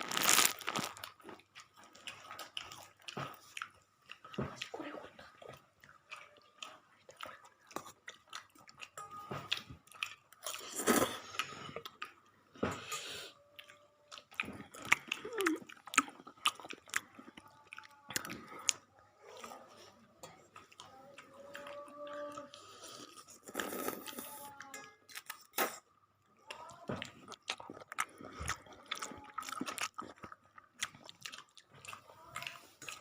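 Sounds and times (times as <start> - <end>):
person chewing crunchy food: 0.0 - 33.0.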